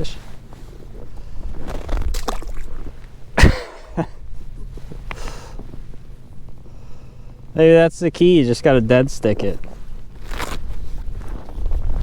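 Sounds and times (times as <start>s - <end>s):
rustling handling noises: 0.0s - 2.1s, 4.2s - 7.6s, 8.2s - 12.0s.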